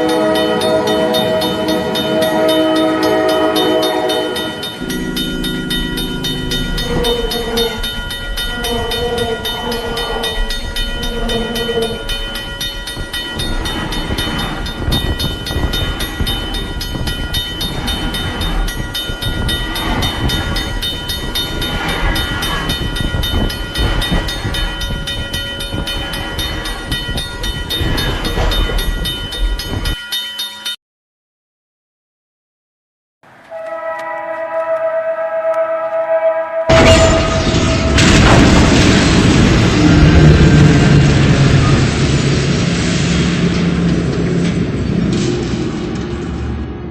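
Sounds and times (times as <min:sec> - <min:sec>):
train horn blasts: 0:00.0 - 0:12.2, 0:33.4 - 0:39.0
train passing with rumble: 0:00.0 - 0:30.0, 0:33.3 - 0:46.9
railroad crossing bell ringing: 0:00.0 - 0:30.8, 0:33.5 - 0:42.5.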